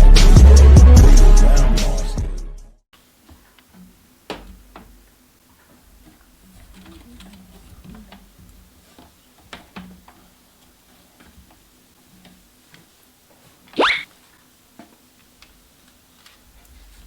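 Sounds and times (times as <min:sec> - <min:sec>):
rising pitch sweep: 0:13.8 - 0:14.0.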